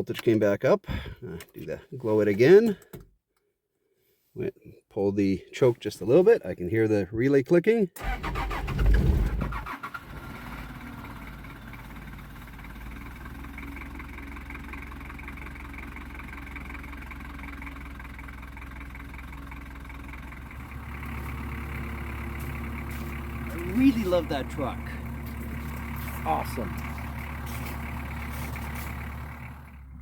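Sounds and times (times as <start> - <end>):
diesel engine starting and idling: 8.0 - 30.0.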